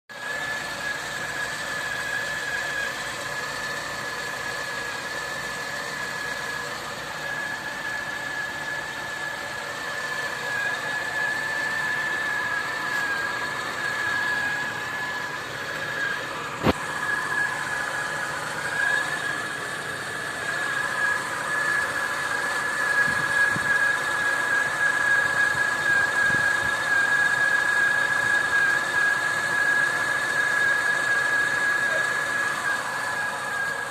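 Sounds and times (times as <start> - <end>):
car engine running: 0.1 - 33.9
high-pitched whistle: 20.4 - 33.9.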